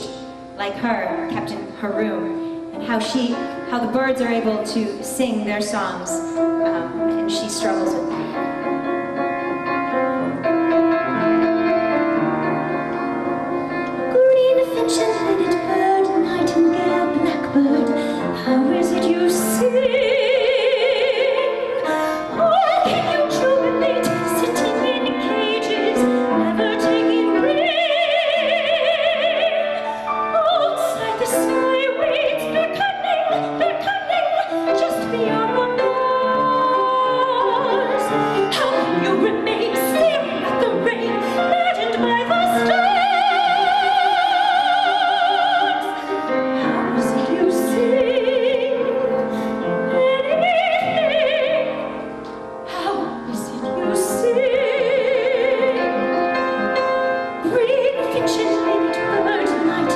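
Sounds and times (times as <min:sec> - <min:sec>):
instrumental accompaniment: 0:00.0 - 0:59.9
woman singing soprano: 0:14.1 - 0:52.0, 0:52.7 - 0:56.8, 0:57.4 - 0:59.9.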